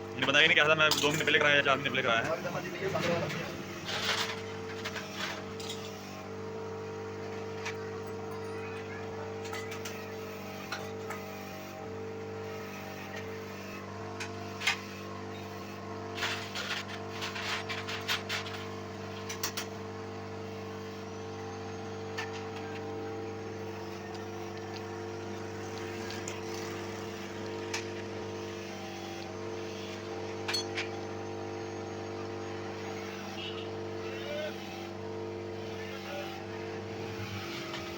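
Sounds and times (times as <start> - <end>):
steady machine hum: 0.0 - 37.9
tools clinking on metal: 30.5 - 30.9.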